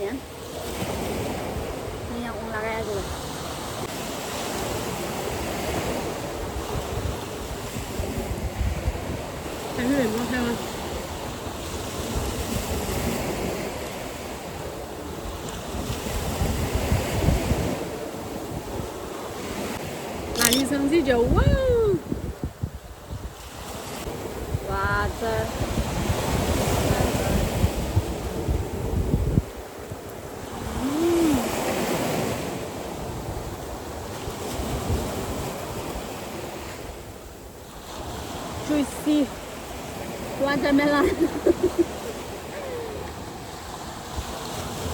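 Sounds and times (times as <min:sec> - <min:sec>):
sea waves breaking on beach: 0:00.0 - 0:21.4, 0:22.0 - 0:44.9
wind: 0:00.0 - 0:44.9
person humming: 0:30.7 - 0:31.6.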